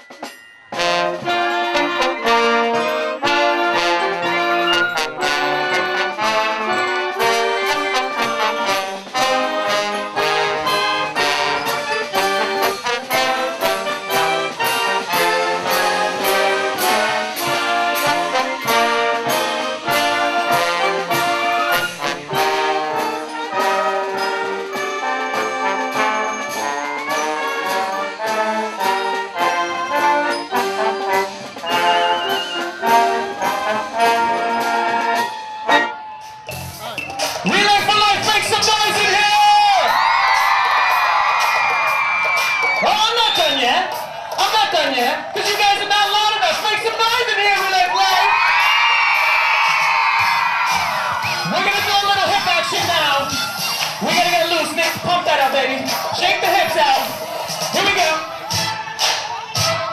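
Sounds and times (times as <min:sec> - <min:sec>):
brass band playing lively tune: 0:00.0 - 0:59.9
steady beat: 0:36.5 - 0:59.9.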